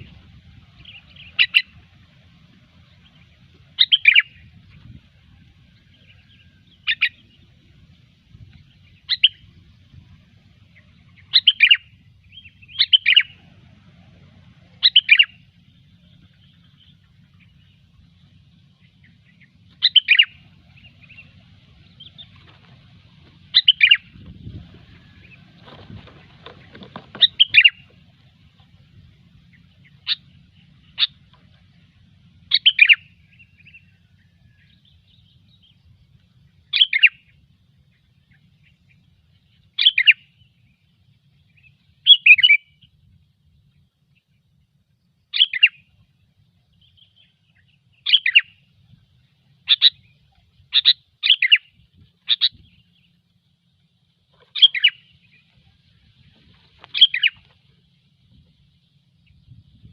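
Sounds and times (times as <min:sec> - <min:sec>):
bird chattering calls: 0:00.0 - 0:01.9, 0:03.0 - 0:04.5, 0:08.8 - 0:09.6, 0:10.8 - 0:13.5, 0:14.8 - 0:17.7, 0:19.0 - 0:22.5, 0:23.5 - 0:28.1, 0:29.4 - 0:31.3, 0:32.4 - 0:34.0, 0:36.7 - 0:37.3, 0:39.8 - 0:40.4, 0:41.6 - 0:42.8, 0:45.3 - 0:45.9, 0:47.6 - 0:48.6, 0:49.6 - 0:53.2, 0:54.4 - 0:55.5, 0:56.3 - 0:57.5.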